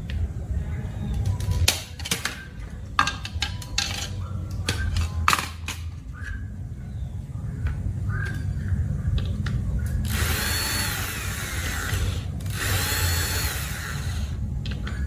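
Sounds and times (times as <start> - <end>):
steady low rumble: 2.4 - 15.0
small tools clicking and clattering: 3.0 - 5.9.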